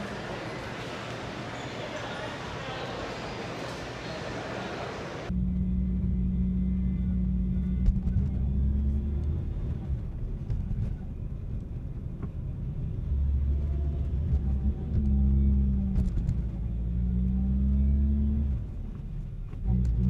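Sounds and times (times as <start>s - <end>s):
car engine droning: 5.3s - 20.0s.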